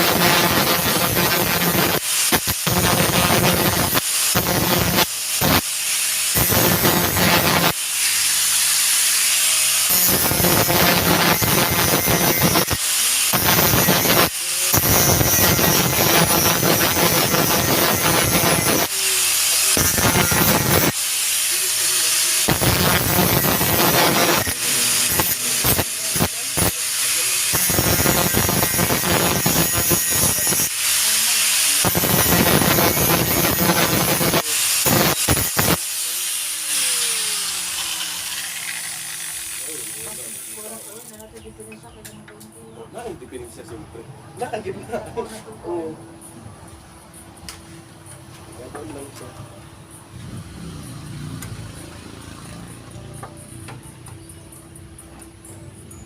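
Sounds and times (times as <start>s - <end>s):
power tool working on metal: 0.0s - 41.2s.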